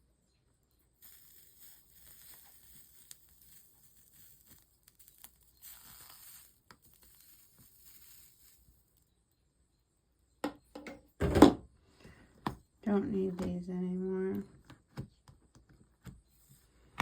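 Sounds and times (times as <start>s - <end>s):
soldering iron sizzling hiss: 0.9s - 9.0s.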